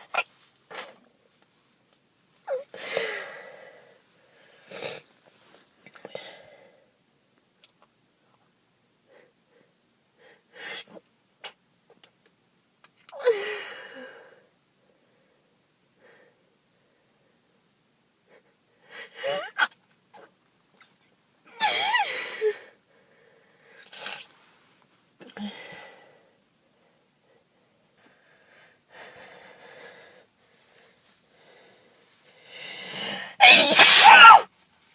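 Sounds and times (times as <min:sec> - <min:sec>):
noisy breaths: 0:22.1 - 0:24.8, 0:25.4 - 0:33.4
person sneezing: 0:32.9 - 0:34.5.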